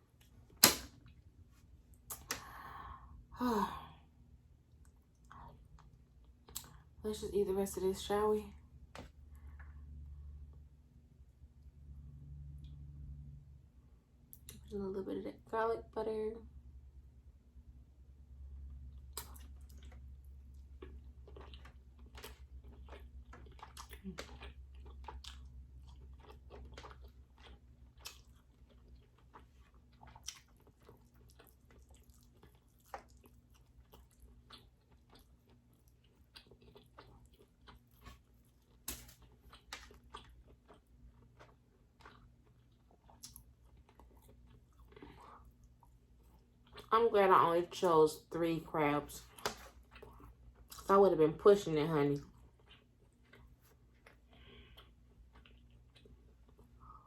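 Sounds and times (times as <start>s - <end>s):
chewing and mouth sounds: 18.8s - 46.9s, 49.2s - 50.9s, 52.2s - 57.0s.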